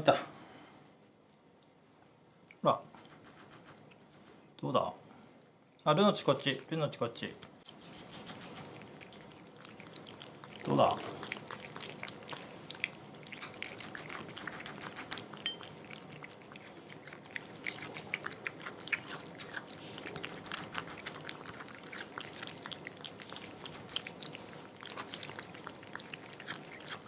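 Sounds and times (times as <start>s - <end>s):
cat eating wet food: 7.4s - 27.0s.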